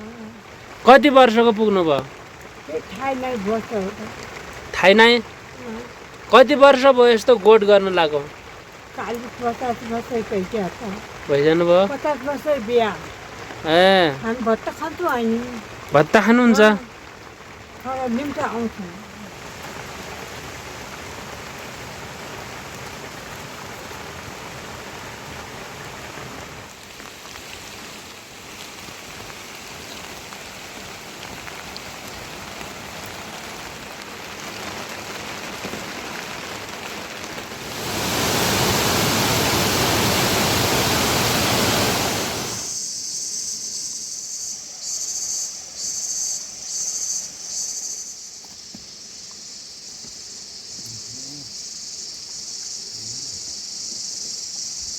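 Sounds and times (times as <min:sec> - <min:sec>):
steady rain hiss: 0:00.0 - 0:54.9
insect trilling: 0:04.8 - 0:17.1, 0:17.8 - 0:20.2, 0:37.4 - 0:54.9.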